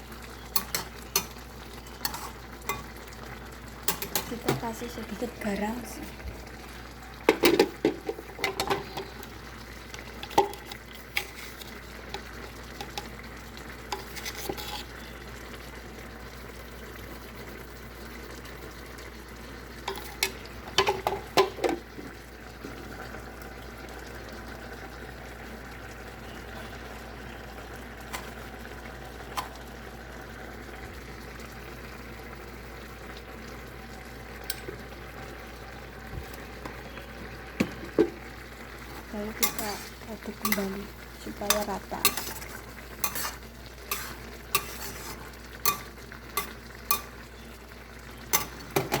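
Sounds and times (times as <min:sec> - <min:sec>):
soft hiss of simmering pot: 0:00.0 - 0:49.0
spoon scraping a pot: 0:02.0 - 0:02.9, 0:10.2 - 0:13.1, 0:13.9 - 0:15.1, 0:19.9 - 0:21.8, 0:38.8 - 0:47.5, 0:48.3 - 0:49.0.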